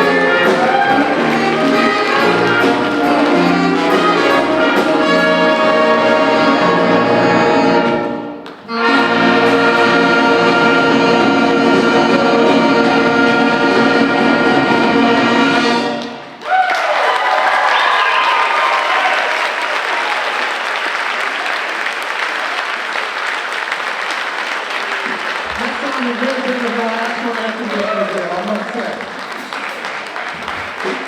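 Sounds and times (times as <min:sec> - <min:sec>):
audience applause: 0:00.0 - 0:06.4, 0:15.7 - 0:31.0
jazz big band with brass: 0:00.0 - 0:16.3.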